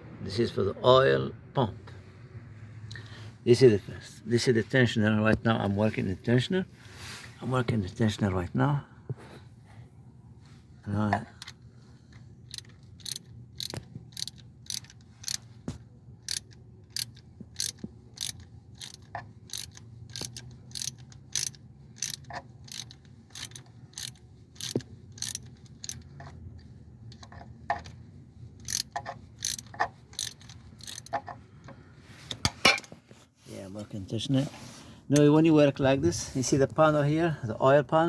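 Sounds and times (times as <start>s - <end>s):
ratchet clicking: 12.4s - 15.6s, 16.2s - 26.4s, 27.1s - 28.0s, 28.6s - 31.4s.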